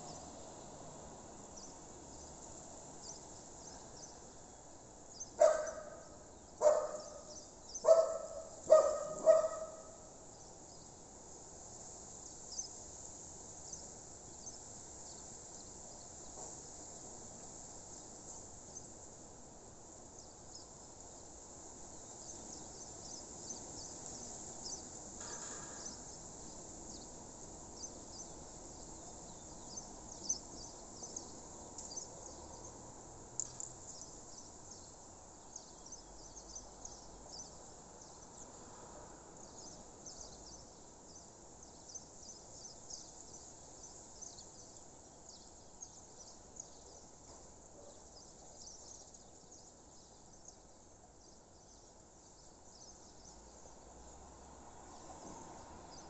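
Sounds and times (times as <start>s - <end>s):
crickets chirping: 0.0s - 56.0s
dog barking: 5.4s - 10.0s, 47.8s - 48.0s.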